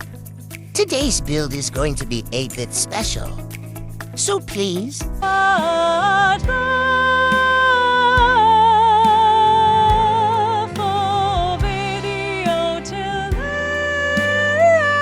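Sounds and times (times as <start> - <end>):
slow low thudding beat: 0.0 - 14.7
person singing with vibrato: 5.2 - 15.0.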